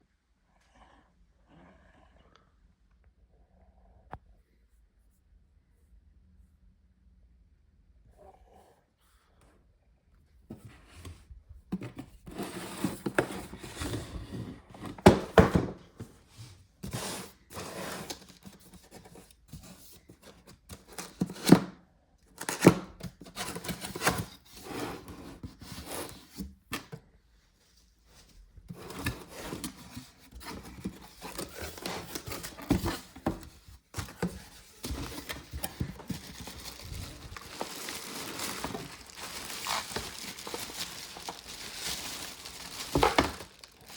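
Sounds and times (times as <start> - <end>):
cardboard and tape tearing: 28.7 - 43.9
wrapping scraping and rustling: 28.7 - 43.9.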